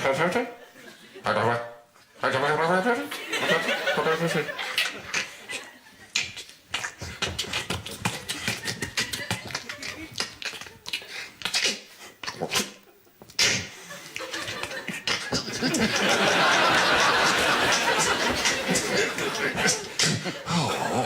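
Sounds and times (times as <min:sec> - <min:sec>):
man making mouth clicks and pops: 0:05.1 - 0:05.3, 0:06.0 - 0:15.6, 0:19.6 - 0:20.3
noisy vocal burst: 0:11.2 - 0:21.0.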